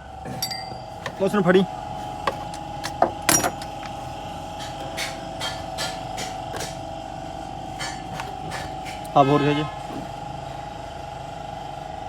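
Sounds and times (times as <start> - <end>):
hand tools tapping on metal: 0.3 - 6.8.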